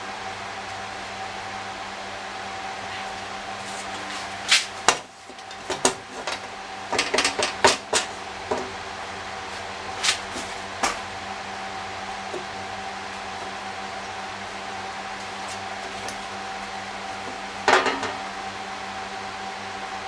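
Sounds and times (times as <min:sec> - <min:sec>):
steady background hum: 0:00.0 - 0:20.0
metal parts knocking: 0:05.4 - 0:08.7, 0:17.7 - 0:18.2.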